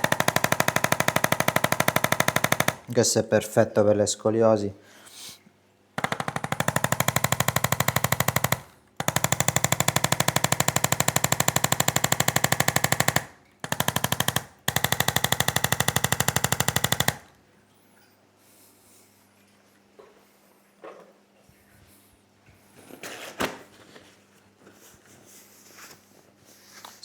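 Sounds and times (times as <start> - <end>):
electric percussion device tapping: 0.0 - 3.0, 6.0 - 17.3.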